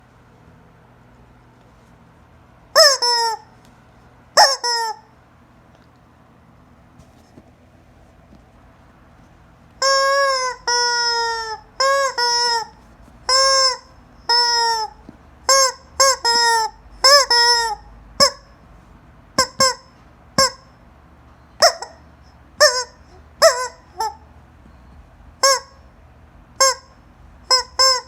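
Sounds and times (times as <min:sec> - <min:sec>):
rubber chicken toy squeaking: 0:02.8 - 0:03.5, 0:04.4 - 0:05.1, 0:09.8 - 0:18.6, 0:19.4 - 0:20.8, 0:21.6 - 0:25.9, 0:26.6 - 0:28.0.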